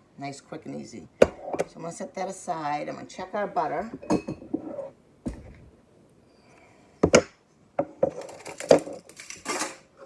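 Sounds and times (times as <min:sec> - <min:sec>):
dishes and utensils clattering: 0:04.0 - 0:04.8, 0:08.0 - 0:09.9.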